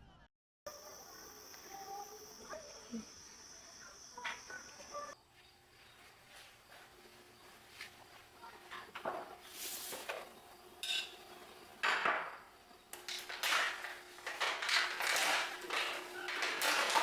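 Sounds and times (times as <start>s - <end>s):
dishes and cutlery clinking: 10.8s - 11.2s.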